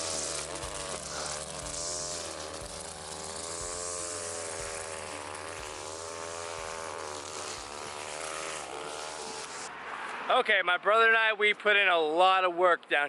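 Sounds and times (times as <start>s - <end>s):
string trimmer buzzing: 0.0s - 9.9s.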